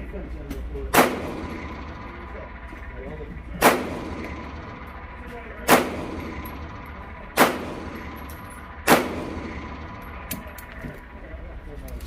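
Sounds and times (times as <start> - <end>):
steady low hum: 0.0 - 12.0
pistol shots: 0.9 - 2.5, 3.6 - 10.8.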